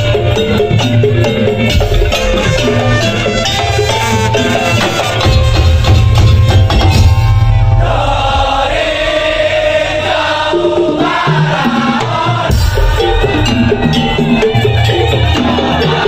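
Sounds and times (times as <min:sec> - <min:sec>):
ensemble drumming: 0:00.0 - 0:16.0
voices singing together: 0:07.2 - 0:16.0.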